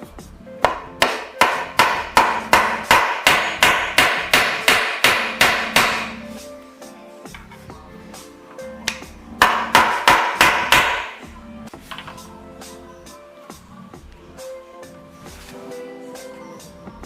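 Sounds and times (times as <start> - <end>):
background music: 0.0 - 17.0
hammer driving nails into wood: 0.6 - 6.2, 8.9 - 11.2.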